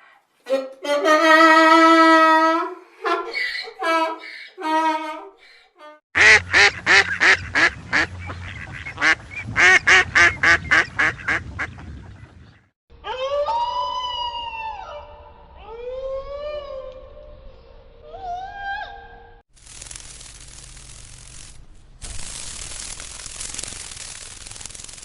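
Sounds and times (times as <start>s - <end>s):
duck quacking: 6.2s - 12.3s.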